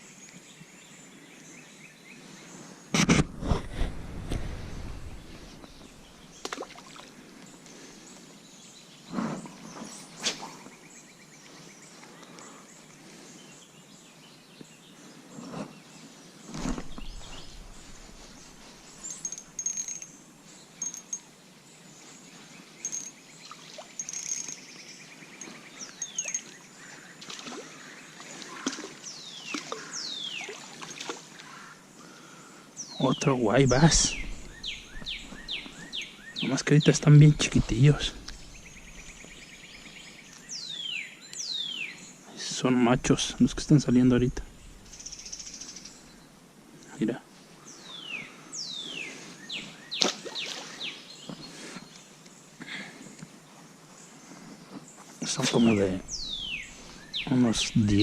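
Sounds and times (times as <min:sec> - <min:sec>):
birds chirping: 0:00.0 - 0:58.0
background hush: 0:33.0 - 0:40.4.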